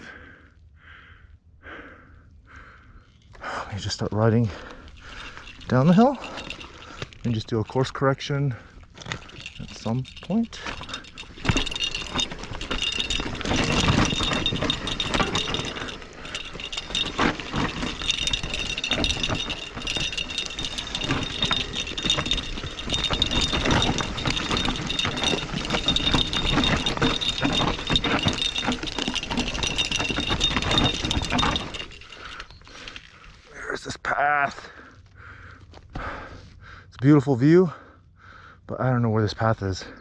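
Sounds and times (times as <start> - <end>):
mountain bike rattling over rocks: 3.1 - 33.6.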